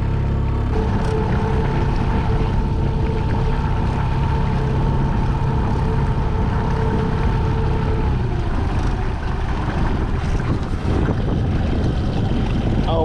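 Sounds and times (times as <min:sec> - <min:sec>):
boat motor humming: 0:00.0 - 0:13.0
faint whine: 0:00.0 - 0:13.0.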